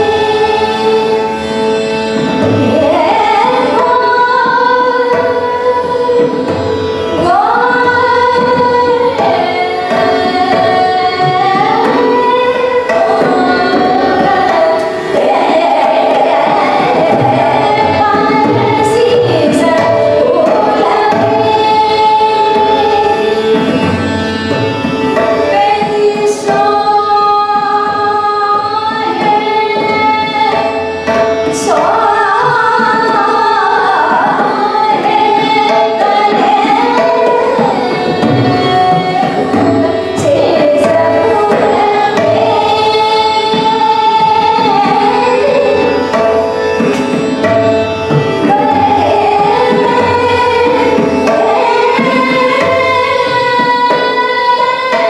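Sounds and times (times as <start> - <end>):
woman singing: 0.0 - 1.4, 2.6 - 24.2, 25.2 - 46.5, 47.8 - 55.0
tabla: 0.0 - 55.0.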